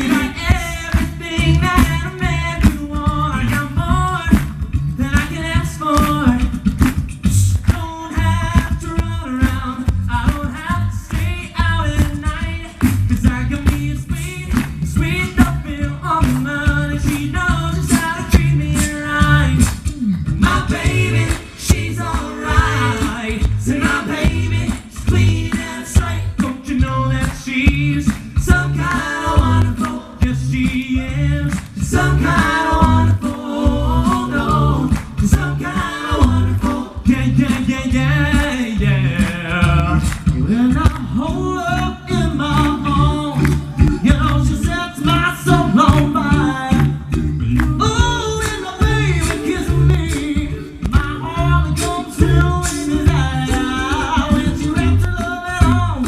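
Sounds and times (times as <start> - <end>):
a cappella group singing in harmony: 0.0 - 56.0.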